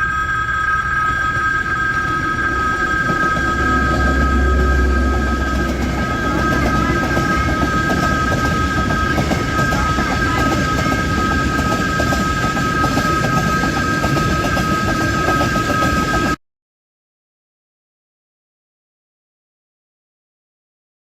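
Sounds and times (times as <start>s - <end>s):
steady high two-note tone: 0.0s - 13.6s
train wheels clattering on rails: 1.1s - 16.4s.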